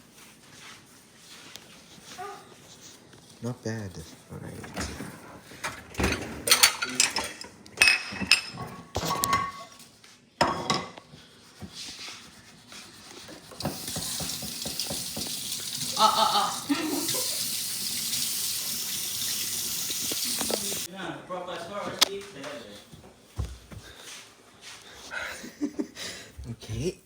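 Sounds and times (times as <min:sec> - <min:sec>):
plates and cutlery clattering: 0:04.6 - 0:09.8, 0:10.4 - 0:11.1
kitchen tap running into sink: 0:13.5 - 0:20.9.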